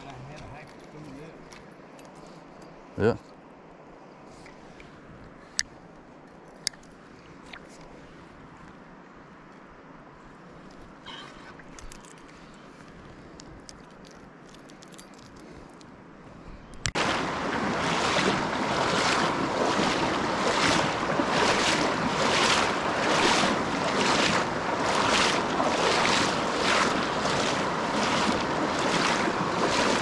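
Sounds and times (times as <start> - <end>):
rushing river water: 16.8 - 30.0.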